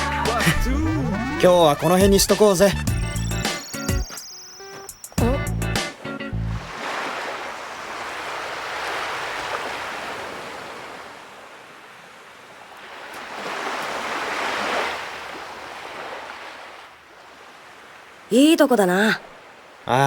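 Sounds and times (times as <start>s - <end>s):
ocean waves breaking: 5.8s - 20.0s.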